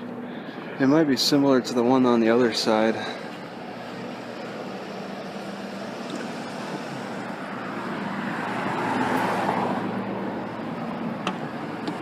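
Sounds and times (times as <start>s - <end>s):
steady low hum: 0.0s - 8.8s
vehicle passing: 2.9s - 11.6s.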